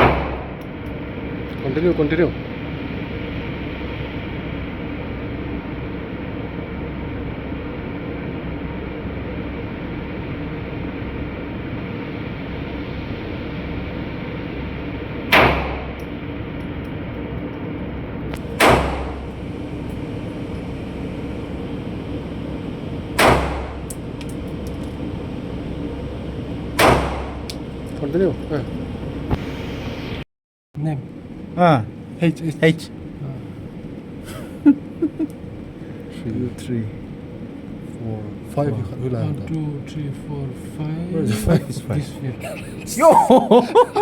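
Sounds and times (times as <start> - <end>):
steady background hum: 0.0 - 30.2, 30.8 - 44.0
pistol shots: 18.5 - 19.2.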